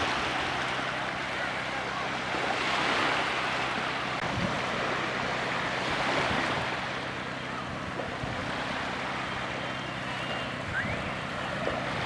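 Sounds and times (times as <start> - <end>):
sea surf rushing: 0.0 - 12.0
wind buffeting microphone: 4.2 - 4.9, 10.0 - 12.0.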